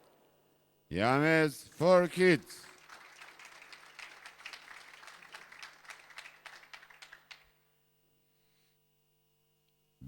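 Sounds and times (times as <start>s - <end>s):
audience applause: 1.9s - 7.5s.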